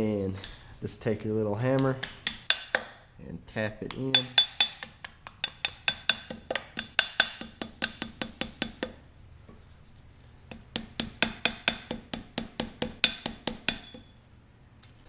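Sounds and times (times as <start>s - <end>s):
small hammer tapping metal: 1.7s - 3.0s, 3.6s - 9.0s, 10.5s - 14.2s.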